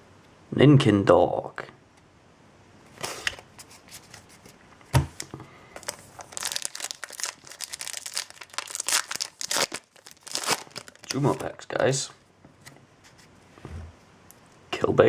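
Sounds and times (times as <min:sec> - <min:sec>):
foil wrapper crinkling and tearing: 0:05.8 - 0:11.4.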